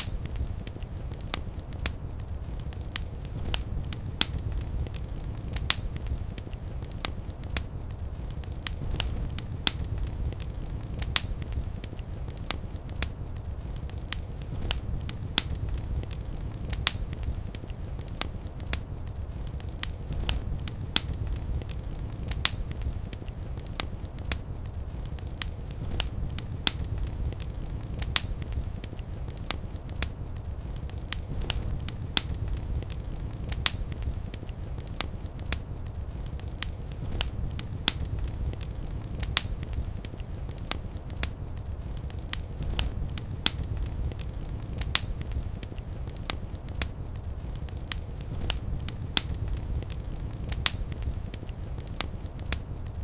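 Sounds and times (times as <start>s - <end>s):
fire crackling and popping: 0.0s - 53.0s
low rumble of flames: 0.0s - 53.0s.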